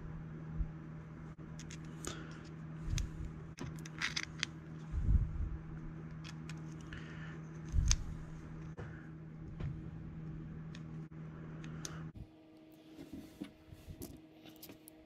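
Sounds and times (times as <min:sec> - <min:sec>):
steady low hum: 0:00.0 - 0:15.0
plastic and metal parts rattling: 0:03.6 - 0:04.6.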